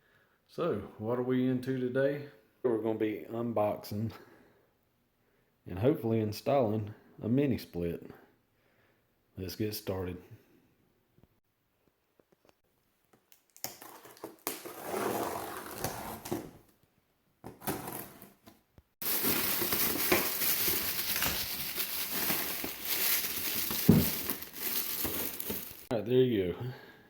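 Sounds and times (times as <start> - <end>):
cardboard and plastic crinkling: 13.7 - 16.6, 17.5 - 25.9.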